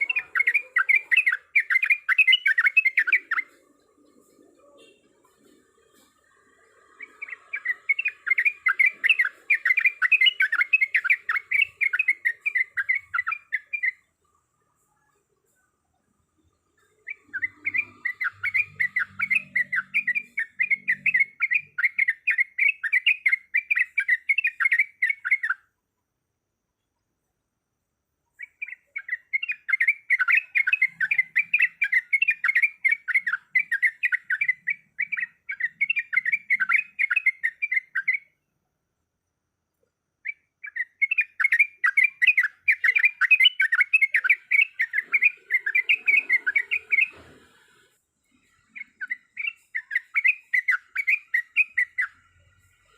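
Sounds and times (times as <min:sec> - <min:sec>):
bird chattering calls: 0:00.0 - 0:14.1, 0:40.6 - 0:47.2.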